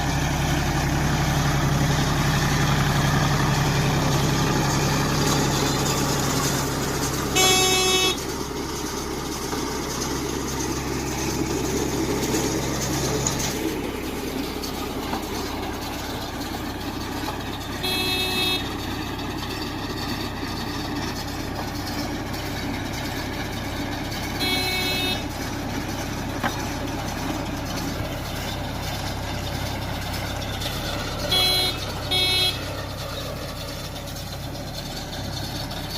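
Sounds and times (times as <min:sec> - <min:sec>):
tractor engine running: 0:00.0 - 0:35.9
vehicle horn honks: 0:07.3 - 0:08.2, 0:17.8 - 0:18.8, 0:24.4 - 0:25.4, 0:31.2 - 0:32.8.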